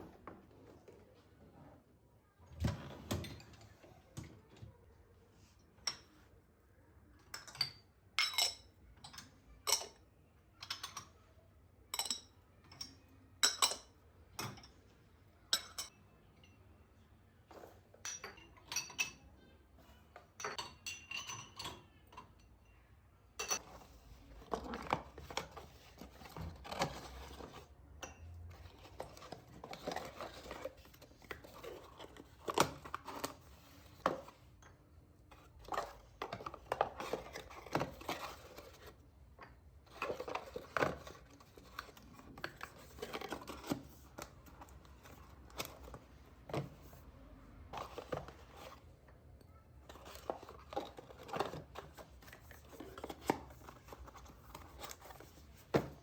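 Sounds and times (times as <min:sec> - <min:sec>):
dishes and utensils clinking: 0:07.2 - 0:11.2, 0:11.9 - 0:14.9, 0:15.5 - 0:16.7, 0:17.5 - 0:47.0.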